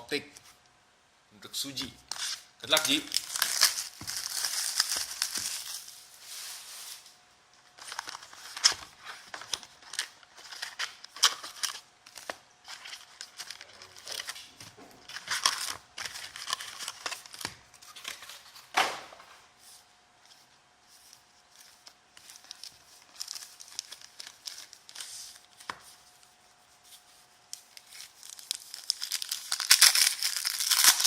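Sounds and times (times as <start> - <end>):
packaging torn and crinkled: 2.1 - 6.1, 7.7 - 14.5, 15.1 - 18.6, 21.6 - 25.6, 27.5 - 31.0.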